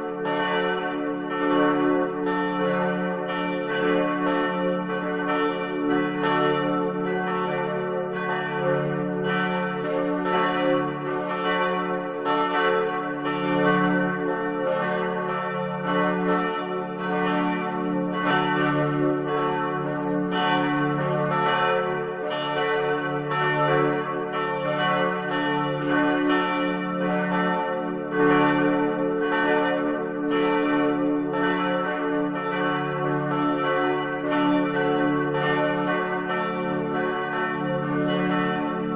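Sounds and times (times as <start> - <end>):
church bells ringing: 0.0 - 38.9.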